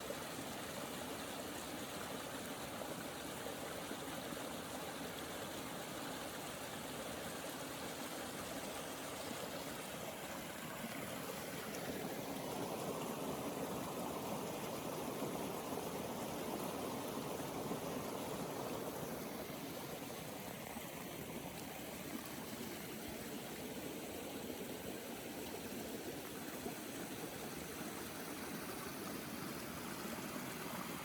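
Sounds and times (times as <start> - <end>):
water rushing over rocks: 7.0 - 24.9, 25.8 - 31.0.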